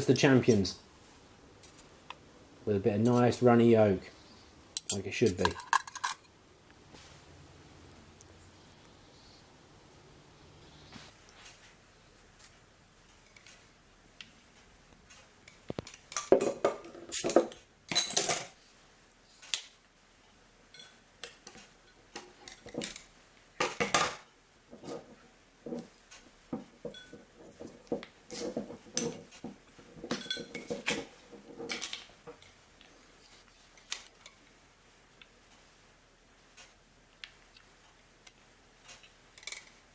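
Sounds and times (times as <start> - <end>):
cutlery clinking on a plate: 26.8 - 27.7, 30.1 - 31.1.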